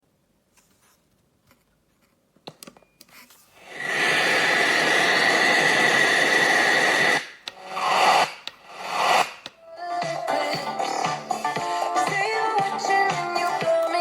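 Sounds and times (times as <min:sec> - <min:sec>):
radio static hiss: 0:03.6 - 0:09.4
steady high whistle: 0:03.6 - 0:09.4
music from radio station: 0:03.8 - 0:14.0.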